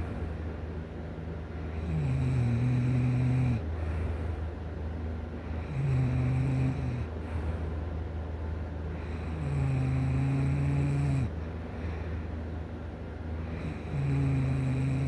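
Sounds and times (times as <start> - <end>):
person snoring: 1.8 - 3.6, 5.6 - 7.1, 9.0 - 11.3, 13.6 - 15.0.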